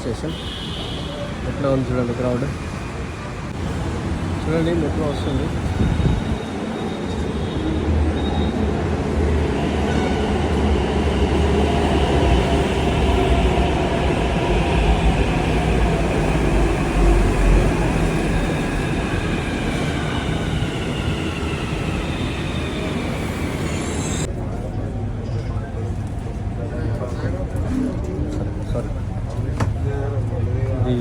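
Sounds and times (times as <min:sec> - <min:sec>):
train wheels rumbling on rails: 0:02.1 - 0:24.6.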